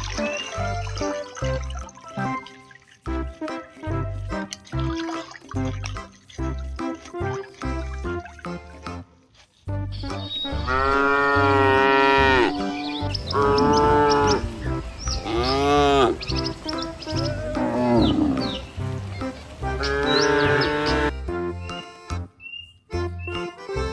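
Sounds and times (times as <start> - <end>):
children's music with steady beat: 0.0 - 23.9
cow mooing: 10.5 - 16.2, 17.0 - 18.7, 19.7 - 21.1.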